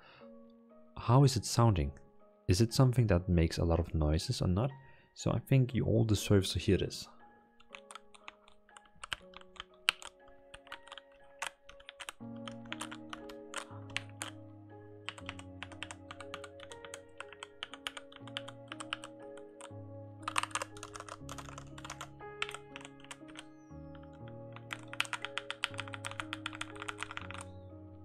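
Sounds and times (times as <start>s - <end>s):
typing on mechanical keyboard: 7.6s - 14.4s, 15.0s - 27.5s.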